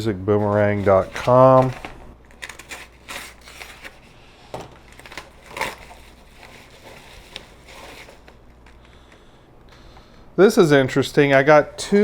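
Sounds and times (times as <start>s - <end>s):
packaging rustling and crackling: 0.4s - 9.3s
packaging snaps: 0.8s - 4.1s, 4.8s - 9.3s.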